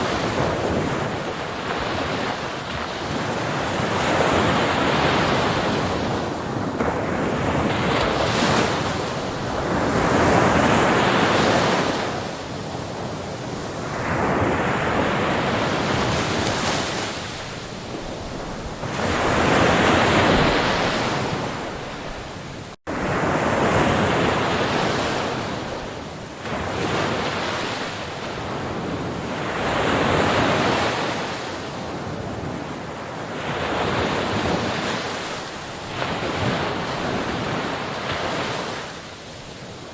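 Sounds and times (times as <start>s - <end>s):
ocean waves breaking: 0.0s - 39.9s.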